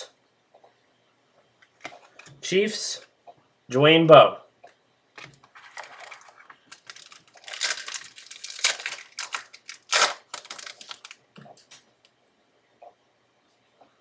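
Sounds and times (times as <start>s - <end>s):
trading cards rustling and tapping: 5.2s - 11.8s.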